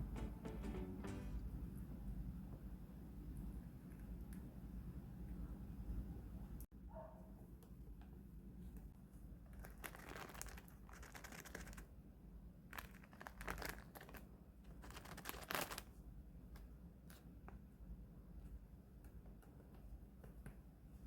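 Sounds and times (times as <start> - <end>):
food packaging crinkling: 9.5 - 11.9, 12.7 - 16.0.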